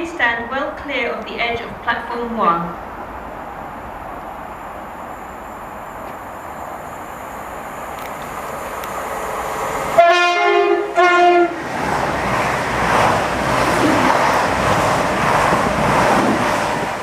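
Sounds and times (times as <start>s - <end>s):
train rumbling past: 0.0s - 17.0s
train horn blasts: 10.0s - 11.6s.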